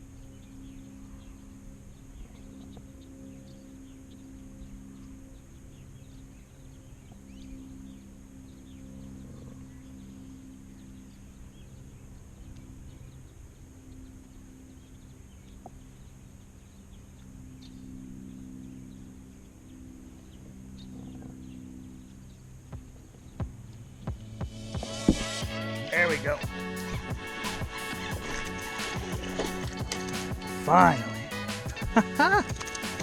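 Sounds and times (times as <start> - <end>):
low steady hum: 0.0 - 33.0
high-pitched insect drone: 24.6 - 33.0.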